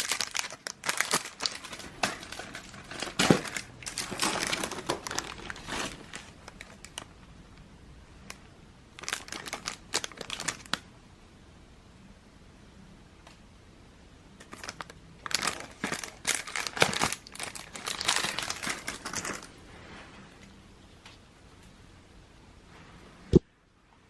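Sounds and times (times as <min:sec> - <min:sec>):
crinkling and rustling: 0:00.0 - 0:07.3, 0:09.0 - 0:10.8, 0:14.4 - 0:21.8.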